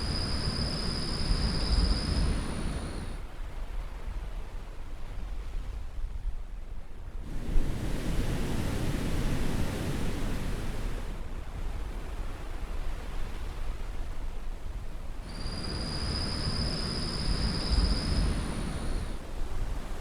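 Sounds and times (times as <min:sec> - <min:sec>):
sea surf washing: 0:00.0 - 0:03.2, 0:15.3 - 0:19.3.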